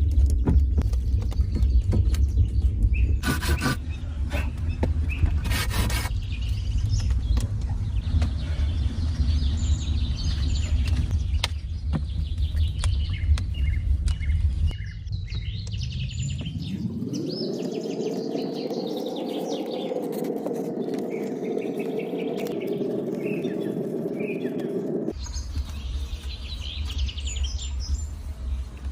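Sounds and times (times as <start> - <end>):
low rumble: 0.0 - 5.5, 6.1 - 28.9
small birds chirping: 0.0 - 28.9
steady rushing noise: 6.1 - 28.9.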